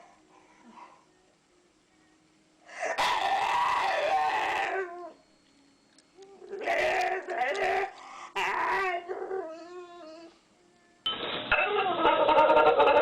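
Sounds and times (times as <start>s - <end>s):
animal wavering cries: 2.8s - 5.2s, 6.3s - 10.4s.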